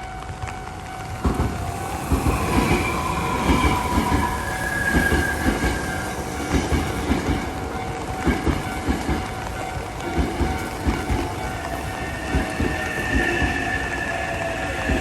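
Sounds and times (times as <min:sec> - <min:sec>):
train wheels clattering over rail joints: 0:00.4 - 0:15.0
high whining tones: 0:11.2 - 0:15.0.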